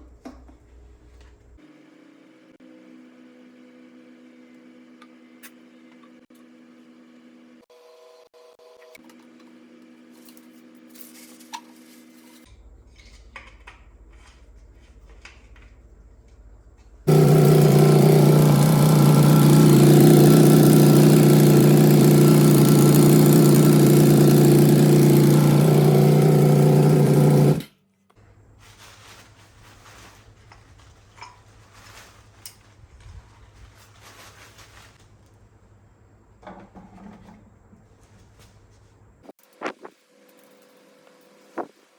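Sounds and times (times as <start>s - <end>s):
motorcycle engine running: 17.1s - 27.7s.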